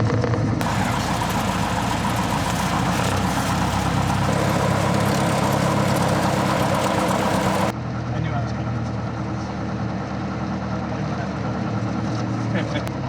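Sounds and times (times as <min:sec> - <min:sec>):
airplane engine droning: 0:00.6 - 0:07.7.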